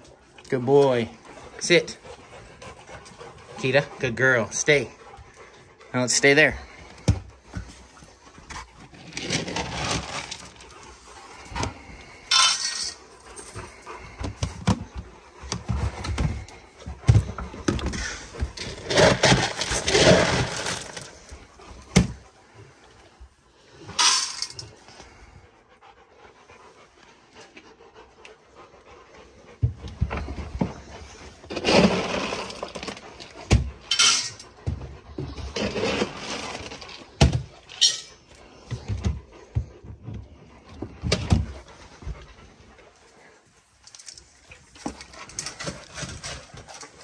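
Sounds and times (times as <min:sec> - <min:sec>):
dogs panting: 0:00.0 - 0:47.0
dry dog food rattling into bowls: 0:08.9 - 0:14.6, 0:17.1 - 0:21.3, 0:23.9 - 0:24.8, 0:31.5 - 0:34.6, 0:35.6 - 0:38.2, 0:43.8 - 0:47.0.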